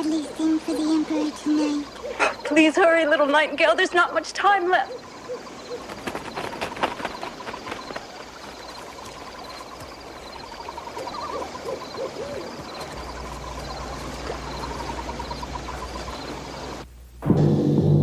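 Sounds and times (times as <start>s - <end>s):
fast pulsing chirp: 0.0s - 16.8s
owl hooting: 0.0s - 16.8s
low steady drone: 12.9s - 18.0s.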